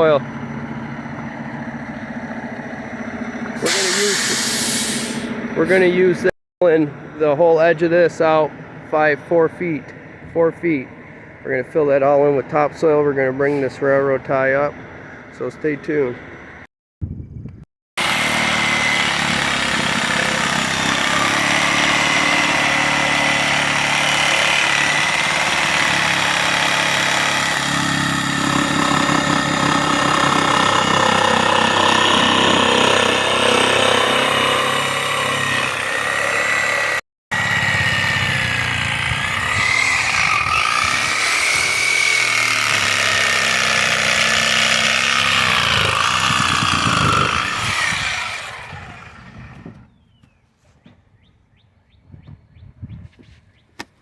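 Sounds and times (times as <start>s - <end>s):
machine engine running under load: 0.0s - 6.2s, 18.0s - 49.9s.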